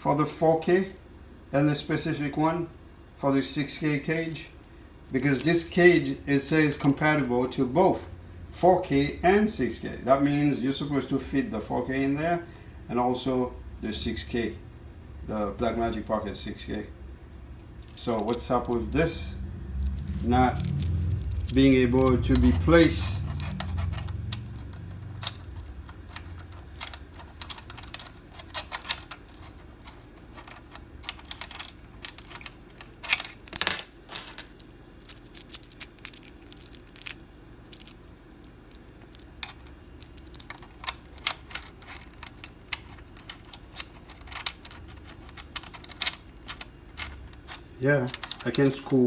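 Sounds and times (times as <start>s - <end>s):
small metal parts clicking: 5.1s - 7.0s, 17.8s - 19.1s, 19.8s - 48.9s.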